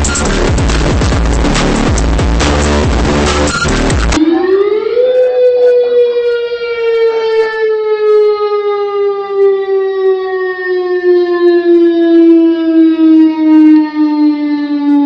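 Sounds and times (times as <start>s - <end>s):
electronic music: 0.0s - 8.6s
civil defence siren: 4.1s - 15.0s.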